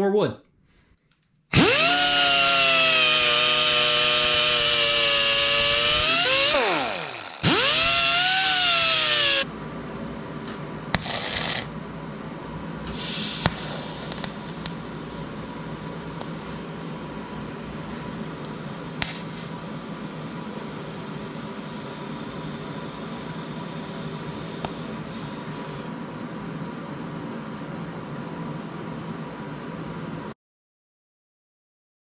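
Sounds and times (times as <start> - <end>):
power tool whining: 1.5 - 9.5, 11.0 - 11.7.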